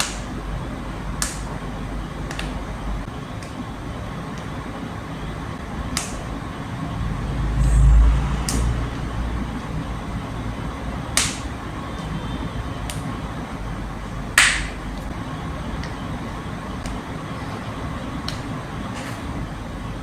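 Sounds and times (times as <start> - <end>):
low rumble of movement: 5.6 - 11.1.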